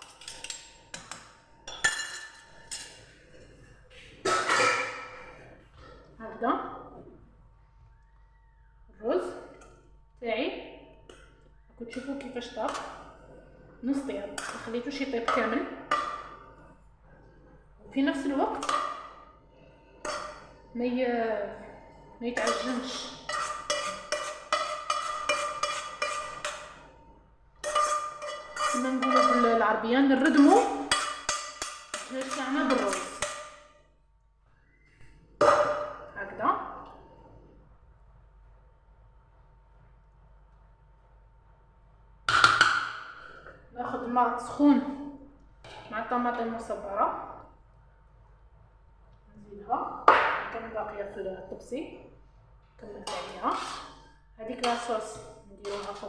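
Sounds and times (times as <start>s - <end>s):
metal spoon clinking on pot: 0.0s - 2.9s, 27.6s - 29.6s, 30.2s - 33.7s
metal kitchenware clinking: 0.0s - 3.0s, 4.2s - 5.2s, 20.0s - 20.6s, 22.4s - 26.8s, 27.6s - 33.7s, 53.0s - 56.0s.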